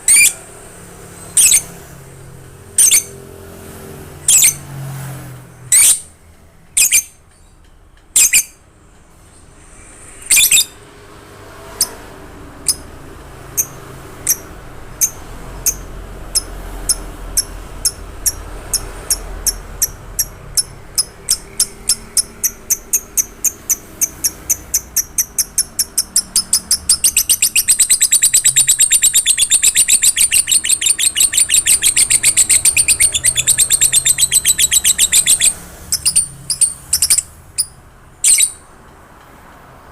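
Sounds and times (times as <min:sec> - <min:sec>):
lovebird chirping and trilling: 0:00.0 - 0:00.5, 0:01.1 - 0:02.0, 0:02.7 - 0:03.2, 0:04.2 - 0:04.7, 0:05.6 - 0:07.2, 0:08.1 - 0:08.6, 0:09.4 - 0:10.8, 0:11.7 - 0:12.0, 0:12.6 - 0:38.7
lovebird shrieks: 0:09.7 - 0:10.8.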